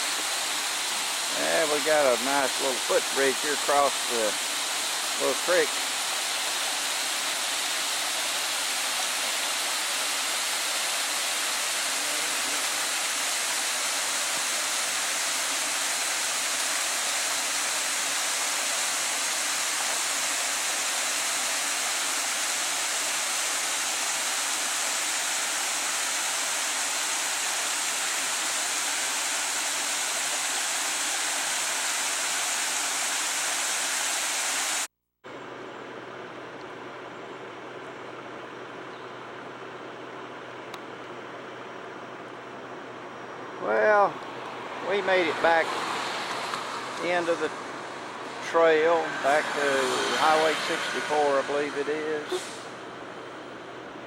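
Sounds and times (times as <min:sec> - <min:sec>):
creek water rushing: 0:00.0 - 0:34.9, 0:43.5 - 0:54.0.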